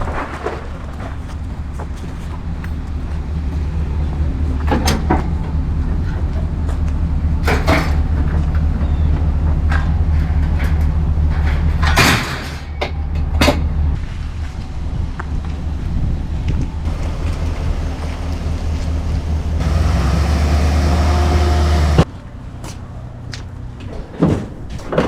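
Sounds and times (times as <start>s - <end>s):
vehicle engine rumbling: 15.6s - 23.8s.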